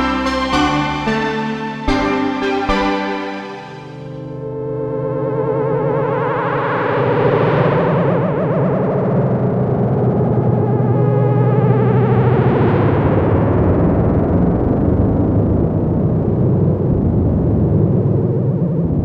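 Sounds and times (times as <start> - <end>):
sustained synthesizer pad: 0.0 - 4.9.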